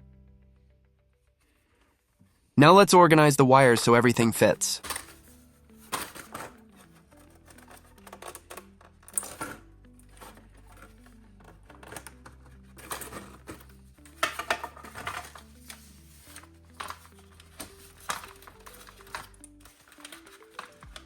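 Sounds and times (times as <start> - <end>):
background music with low notes: 0.0 - 21.0
plastic parts clicking and rattling: 4.8 - 21.0.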